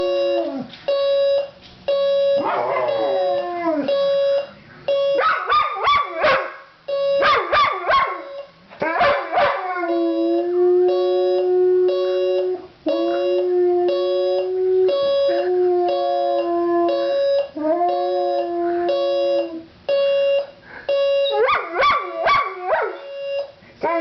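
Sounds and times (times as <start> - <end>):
alarm clock beeping: 0.0 - 8.6, 9.8 - 23.6
dog howling: 2.4 - 3.9.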